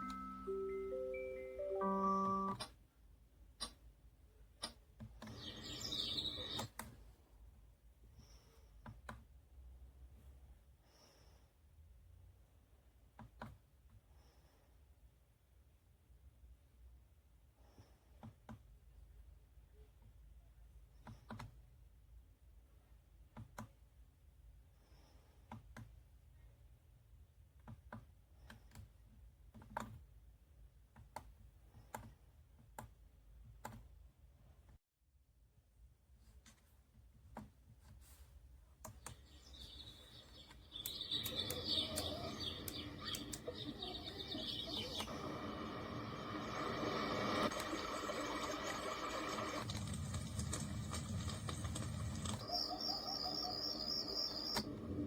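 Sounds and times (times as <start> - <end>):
clicks: 3.6 - 3.9, 38.8 - 45.2, 53.9 - 54.8
birdsong from small speaker: 5.2 - 6.8, 38.9 - 45.4, 52.4 - 54.8
faint clicks in pairs: 21.0 - 21.6.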